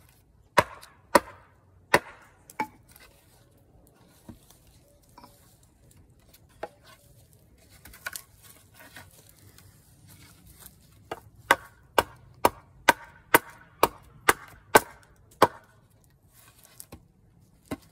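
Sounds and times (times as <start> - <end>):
hatchet chopping wood: 0.5 - 3.0, 11.0 - 15.8, 16.8 - 17.9.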